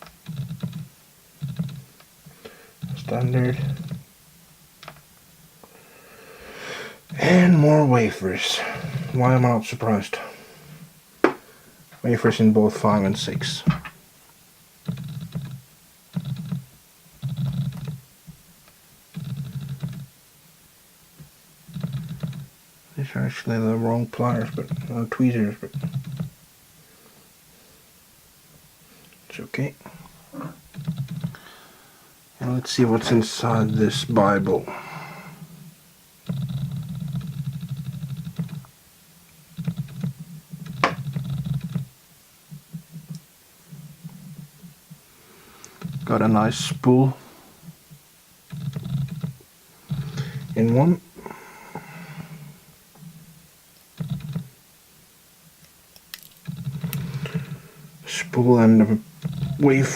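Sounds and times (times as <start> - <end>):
lens autofocus motor chattering: 14.8 - 18.0, 19.1 - 20.1, 21.7 - 22.5, 25.6 - 26.3, 36.2 - 38.7, 39.5 - 41.9, 48.5 - 50.6, 56.3 - 57.5.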